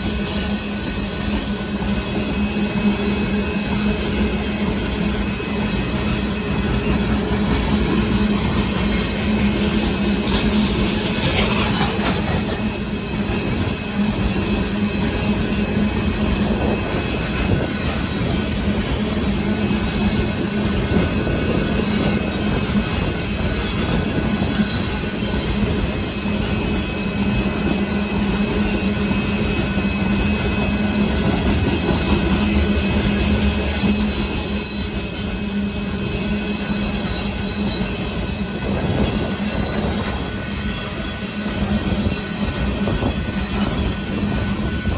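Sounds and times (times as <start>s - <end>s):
freight train wheels on rail: 0.0s - 44.9s
high-pitched wheel squeal: 31.6s - 38.4s.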